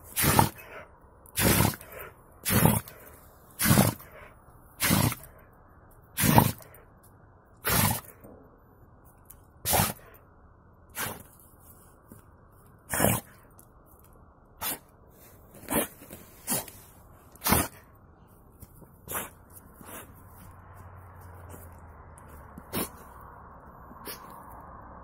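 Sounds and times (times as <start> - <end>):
dog sneezing: 7.6 - 8.0, 9.7 - 10.0, 11.0 - 11.2, 12.9 - 13.3, 14.6 - 14.8, 15.7 - 16.7, 17.4 - 17.8, 19.1 - 20.1, 22.7 - 23.0.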